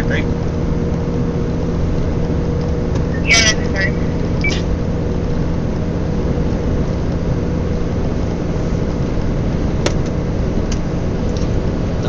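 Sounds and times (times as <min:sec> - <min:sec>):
vehicle engine and road rumble: 0:00.0 - 0:12.0.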